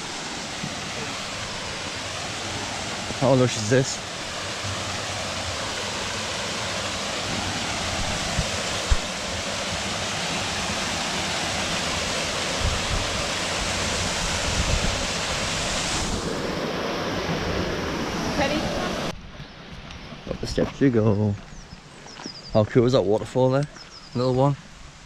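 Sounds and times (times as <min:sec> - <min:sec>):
waterfall rushing: 0:00.0 - 0:19.1.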